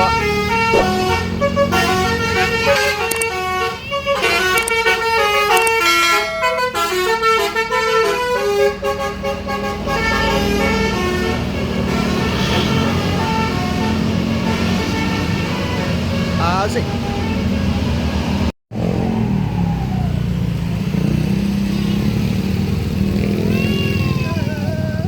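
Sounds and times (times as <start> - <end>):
musical bus horn melody: 6.4 - 16.4.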